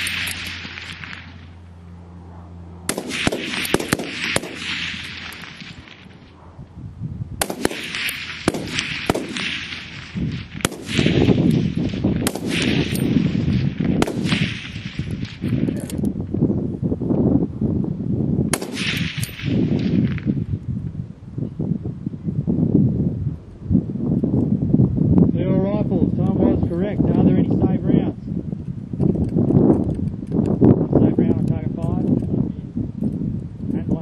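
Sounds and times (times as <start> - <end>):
rifle shots with echo: 0.0 - 1.4, 2.9 - 6.2, 7.4 - 15.9, 18.5 - 20.2.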